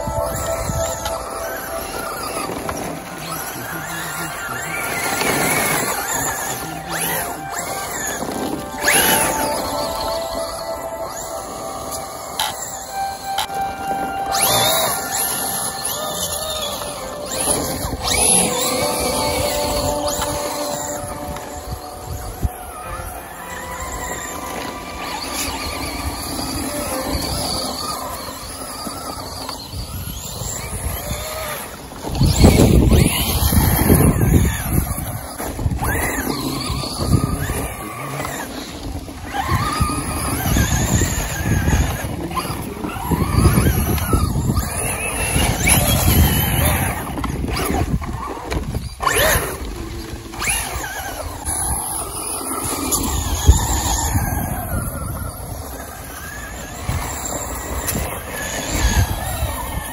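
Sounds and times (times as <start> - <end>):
electric toy car motor whining: 0.0 - 59.9.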